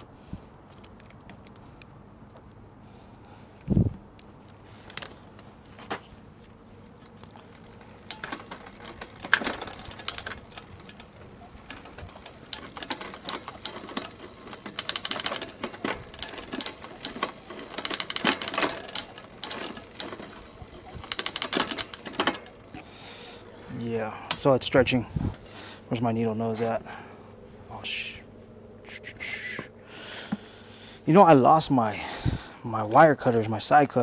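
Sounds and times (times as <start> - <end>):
bicycle chain and hub clicking: 6.8 - 24.5.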